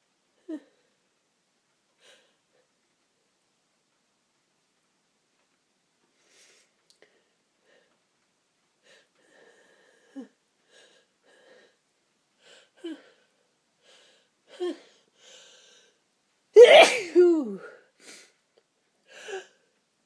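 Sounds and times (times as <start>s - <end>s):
loud sneeze: 16.6s - 17.5s
person gasping before sneeze: 16.6s - 18.3s.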